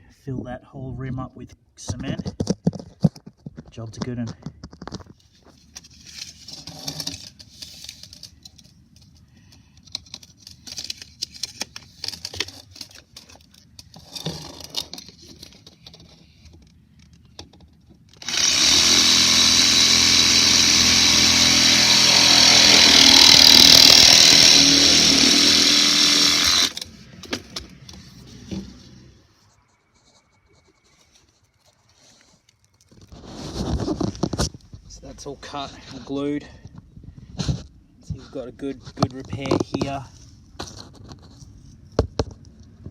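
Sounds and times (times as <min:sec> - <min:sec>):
power saw cutting pipe: 0:18.2 - 0:26.9.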